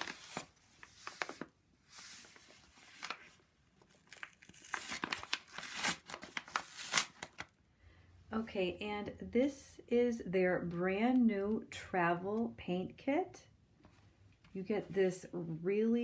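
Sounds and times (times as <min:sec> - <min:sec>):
packaging rustling and tearing: 0:00.0 - 0:07.5.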